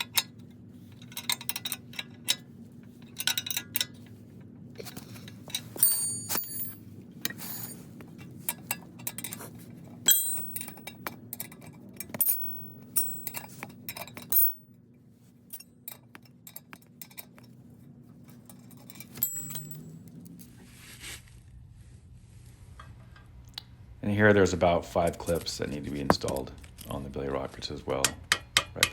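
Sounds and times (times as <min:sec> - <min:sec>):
steady low hum: 0:00.0 - 0:28.9
metal tools clinking: 0:04.8 - 0:14.6, 0:18.2 - 0:20.0.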